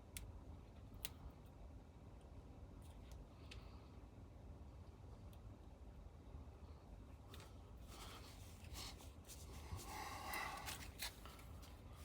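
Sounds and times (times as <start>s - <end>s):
soft rubbing and scraping: 7.8s - 12.0s.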